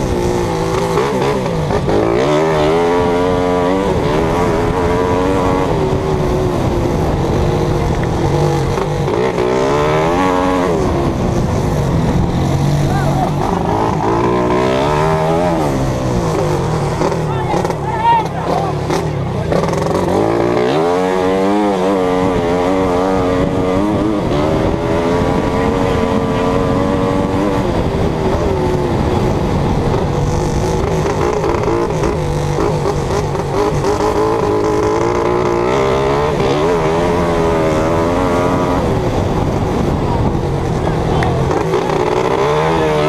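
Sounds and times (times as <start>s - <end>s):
racing engine revving: 0.0s - 43.0s.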